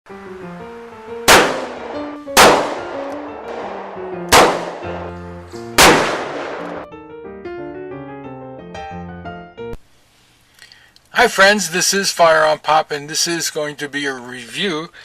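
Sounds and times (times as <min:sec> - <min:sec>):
ragtime piano music: 0:00.1 - 0:05.8
loud gunshots: 0:01.3 - 0:05.0, 0:05.8 - 0:06.8.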